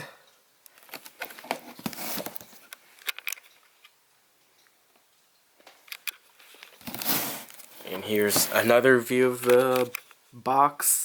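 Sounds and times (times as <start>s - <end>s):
cardboard box rustling: 6.8s - 8.9s.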